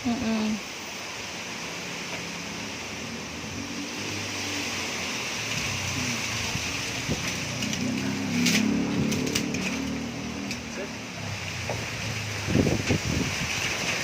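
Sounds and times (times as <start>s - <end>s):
leaves rustling: 0.0s - 14.0s
storm wind gusting through trees: 0.0s - 14.0s
things rattling in wind: 5.2s - 14.0s.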